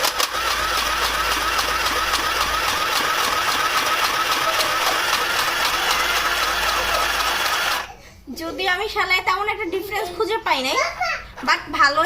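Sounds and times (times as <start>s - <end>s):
sewing machine running: 0.0s - 7.9s.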